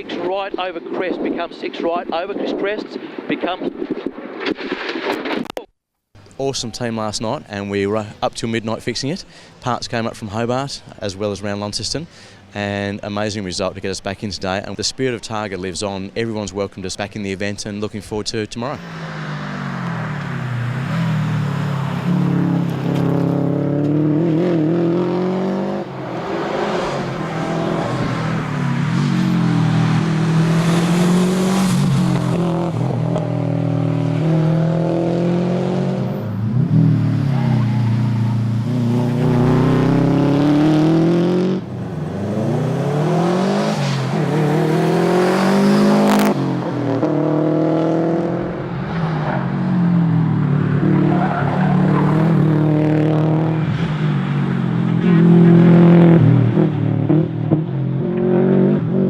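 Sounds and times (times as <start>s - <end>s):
car engine revving: 18.8s - 59.0s.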